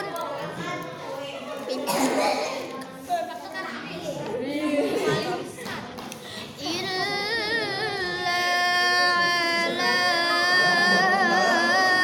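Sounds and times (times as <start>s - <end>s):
high voice chanting: 6.6s - 12.0s.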